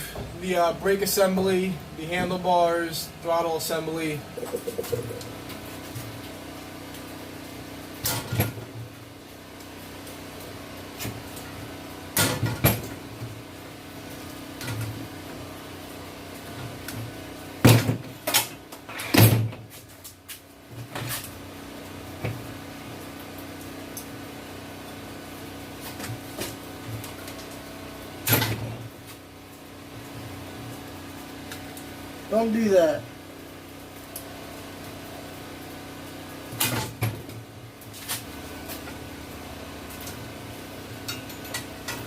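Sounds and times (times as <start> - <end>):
steady low hum: 0.0 - 6.2.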